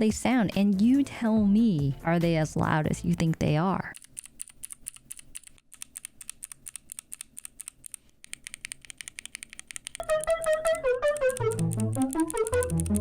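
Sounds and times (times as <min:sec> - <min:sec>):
background music: 0:00.0 - 0:03.9, 0:10.0 - 0:13.0
mechanical keyboard key clicks: 0:04.0 - 0:13.0.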